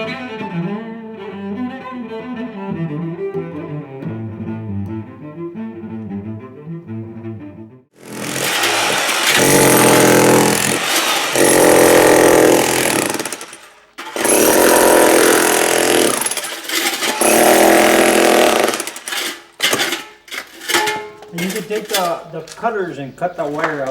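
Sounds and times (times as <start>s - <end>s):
jackhammer breaking concrete: 8.0s - 22.2s.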